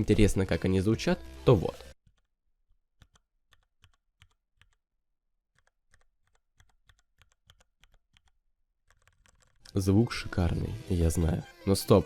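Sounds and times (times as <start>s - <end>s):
mechanical keyboard typing: 3.0s - 4.8s, 5.5s - 9.6s.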